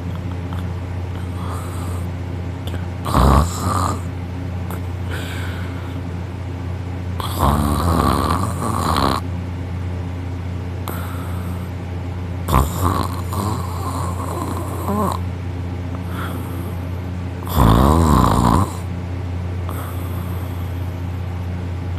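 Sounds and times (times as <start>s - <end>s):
steady low hum: 0.0s - 21.9s
soft breaths: 0.6s - 3.0s, 4.7s - 6.1s, 10.9s - 11.8s, 16.0s - 17.1s
person snoring loudly: 1.2s - 2.1s, 2.7s - 4.1s, 7.2s - 9.2s, 10.9s - 11.7s, 12.5s - 15.2s, 16.0s - 16.8s, 17.4s - 18.9s.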